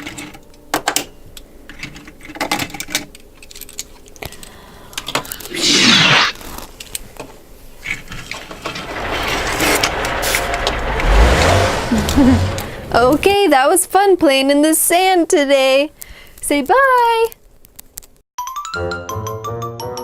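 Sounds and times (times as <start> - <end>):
plastic toys clicking and knocking: 1.7 - 5.3
scraping in sand: 8.5 - 13.5.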